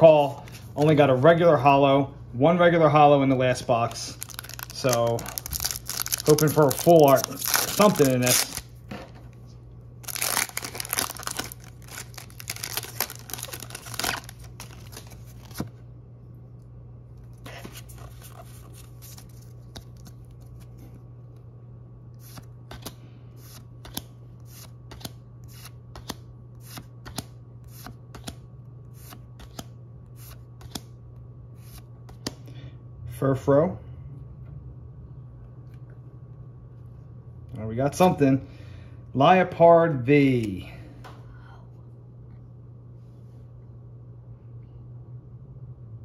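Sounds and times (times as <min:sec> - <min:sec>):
foil wrapper tearing and crinkling: 0:04.1 - 0:08.7, 0:10.0 - 0:15.6
cards flicking clicks: 0:24.9 - 0:28.4.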